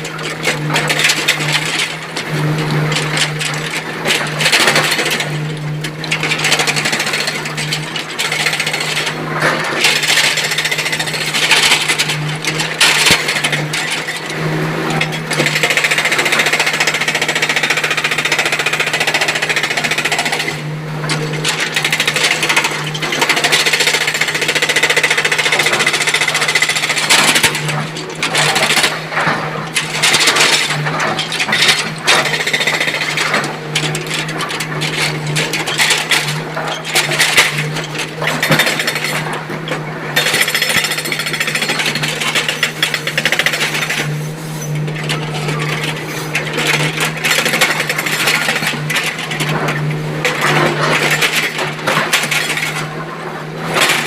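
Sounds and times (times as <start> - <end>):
excavator engine drone: 0.0 - 54.0
rough clattering and scraping: 25.4 - 54.0.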